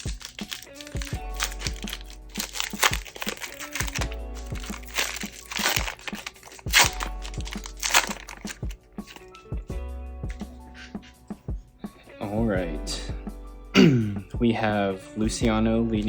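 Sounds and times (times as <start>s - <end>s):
wrapper crinkling and tearing: 0.0s - 9.3s
background music with steady beat: 0.0s - 16.0s.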